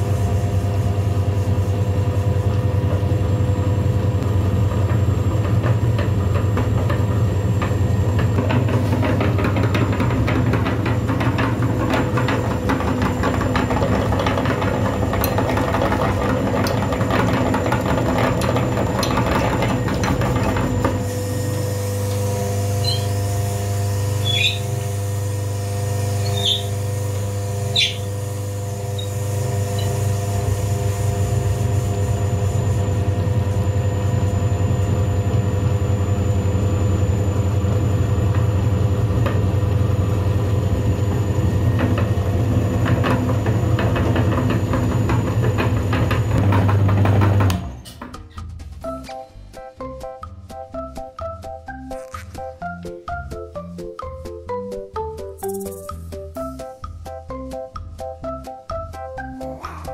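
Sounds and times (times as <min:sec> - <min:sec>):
small motor humming: 0:19.1 - 0:34.8
brief high squeaks: 0:22.8 - 0:23.2, 0:24.2 - 0:24.7, 0:26.2 - 0:26.8, 0:27.7 - 0:28.1.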